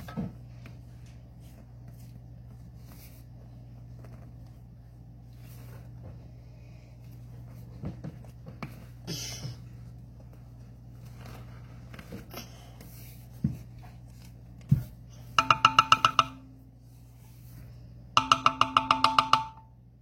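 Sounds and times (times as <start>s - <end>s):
repeated chiming notes: 15.4s - 16.5s
utensil knocking on bowl: 15.4s - 16.5s, 18.2s - 19.7s.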